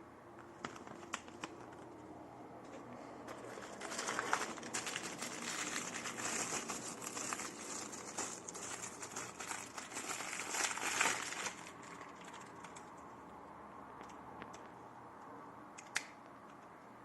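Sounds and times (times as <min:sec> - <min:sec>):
rustling and crinkling handling noise: 0:00.3 - 0:13.1.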